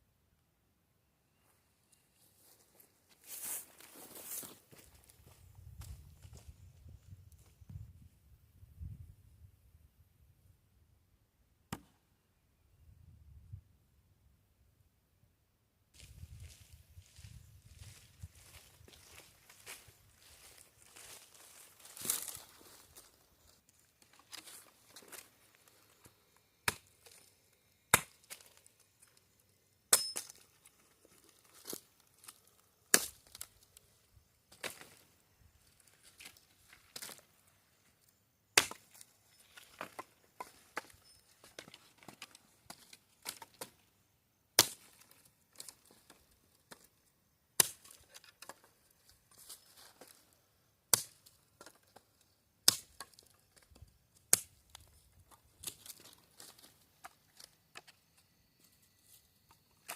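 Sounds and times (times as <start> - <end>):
sharp chopping strikes: 26.6 - 26.9, 27.9 - 28.4, 29.9 - 30.4, 38.6 - 38.8, 44.6 - 44.9.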